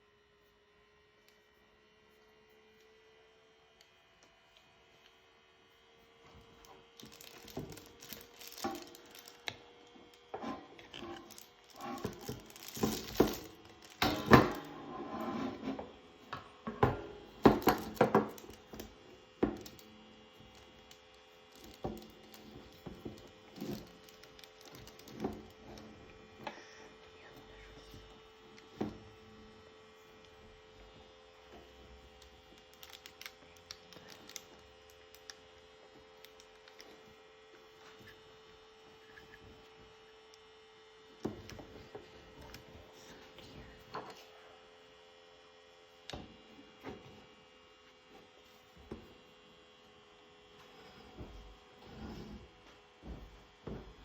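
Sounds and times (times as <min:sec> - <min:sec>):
steady electrical hum: 0:00.0 - 0:54.0
hands handling packaging: 0:06.8 - 0:10.2, 0:10.9 - 0:14.7, 0:17.4 - 0:19.9, 0:20.6 - 0:25.6, 0:32.3 - 0:35.3.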